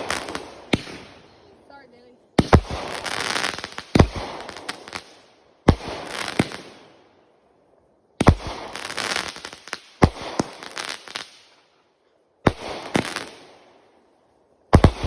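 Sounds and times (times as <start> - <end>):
firework bangs: 0.0 - 6.9, 8.2 - 11.4, 12.5 - 13.6, 14.7 - 15.0.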